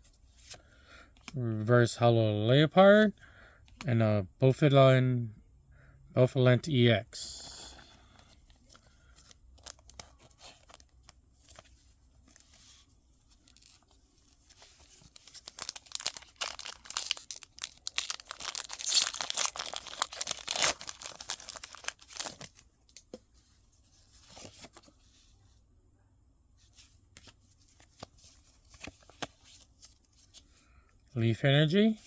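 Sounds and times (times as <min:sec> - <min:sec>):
foil wrapper crinkling and tearing: 0:13.5 - 0:22.6.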